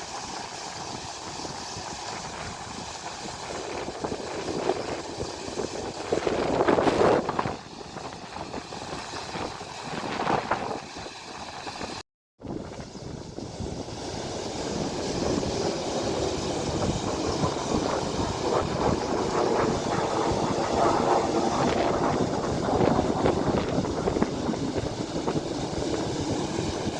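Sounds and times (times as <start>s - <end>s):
wind buffeting microphone: 0.0s - 26.9s
outdoor rushing noise: 12.7s - 26.9s.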